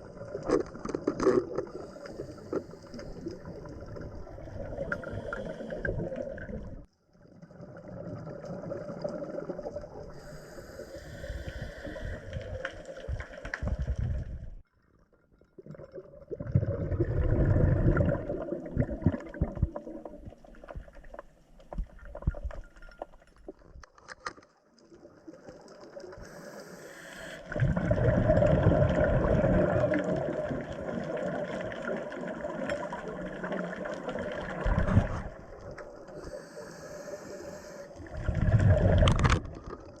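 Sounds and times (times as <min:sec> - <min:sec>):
diver exhaling bubbles underwater: 0:15.6 - 0:20.6, 0:27.4 - 0:40.0.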